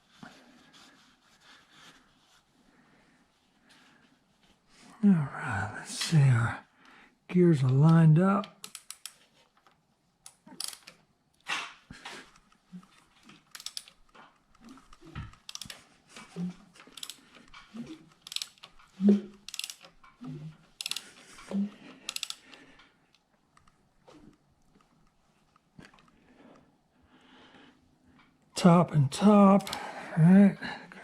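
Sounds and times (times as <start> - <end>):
socket ratchet clicking: 8.4 - 9.2, 10.3 - 11.0, 13.5 - 14.0, 15.3 - 15.8, 16.8 - 17.3, 18.1 - 18.8, 19.4 - 20.0, 20.8 - 21.2, 22.0 - 22.5, 29.6 - 29.8.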